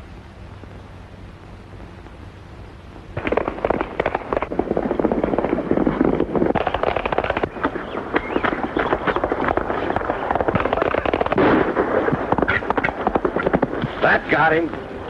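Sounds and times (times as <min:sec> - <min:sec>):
film soundtrack hiss: 0:00.0 - 0:15.0
rapid gunshots: 0:03.2 - 0:14.2.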